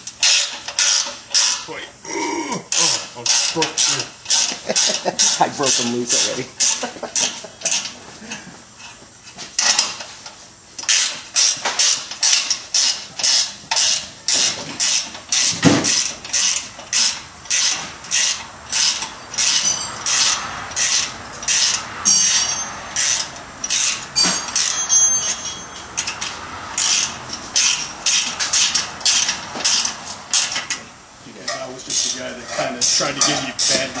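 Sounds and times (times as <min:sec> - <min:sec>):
ratchet wrench strokes: 0:00.1 - 0:01.7, 0:02.7 - 0:07.9, 0:08.8 - 0:30.8, 0:32.0 - 0:34.0
brief metallic squeak: 0:24.2 - 0:26.0.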